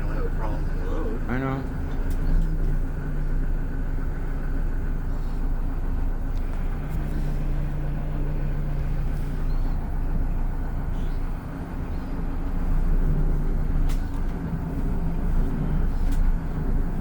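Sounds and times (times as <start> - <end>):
bus diesel engine droning: 0.0 - 17.0.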